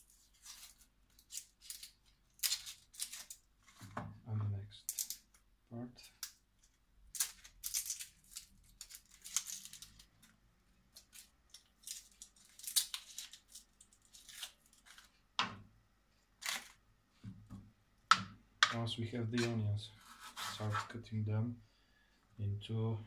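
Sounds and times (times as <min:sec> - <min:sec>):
onion skin peeling and tearing: 0:00.0 - 0:03.5, 0:07.1 - 0:15.2, 0:16.4 - 0:16.8.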